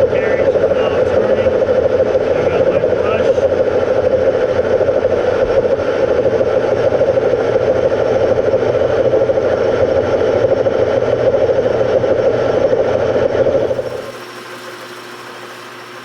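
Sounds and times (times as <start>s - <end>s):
lathe running: 13.6s - 16.0s.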